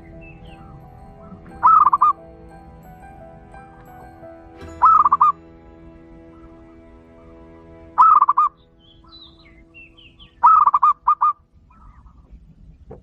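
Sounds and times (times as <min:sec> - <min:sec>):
small birds chirping: 0:00.0 - 0:02.2, 0:08.0 - 0:12.3
steady hum of tones: 0:00.0 - 0:12.7.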